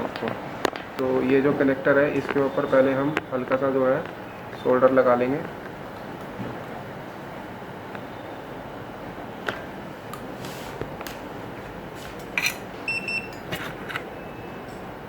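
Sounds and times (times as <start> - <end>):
small repair tools clicking: 12.3 - 12.6.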